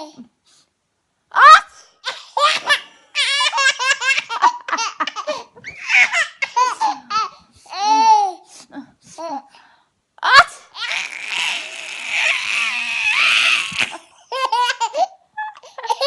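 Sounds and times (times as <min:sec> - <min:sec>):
baby laughing: 0:02.0 - 0:08.4, 0:10.8 - 0:16.0
loud vocal burst: 0:10.9 - 0:14.0.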